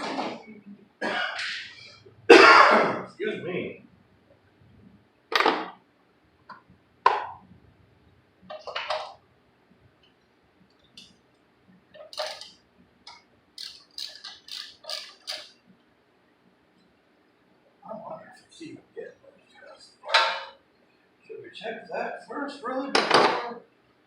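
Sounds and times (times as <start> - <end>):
metal hand tools clinking: 12.0 - 12.5, 13.6 - 15.5.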